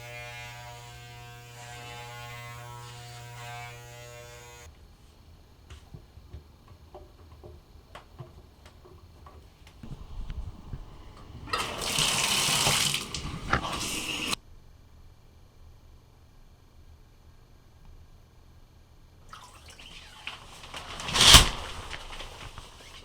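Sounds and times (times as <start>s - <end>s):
steady electric buzz: 0.0s - 4.7s, 9.8s - 14.4s
running water rushing: 9.8s - 14.4s.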